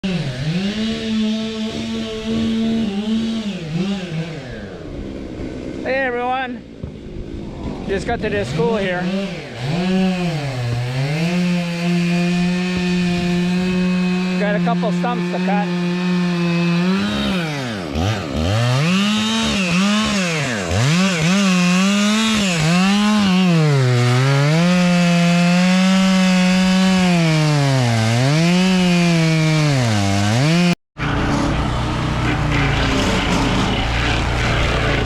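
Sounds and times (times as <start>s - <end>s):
stump grinder engine under load: 0.0s - 6.0s, 7.1s - 35.0s
rough mechanical noise: 31.0s - 35.0s.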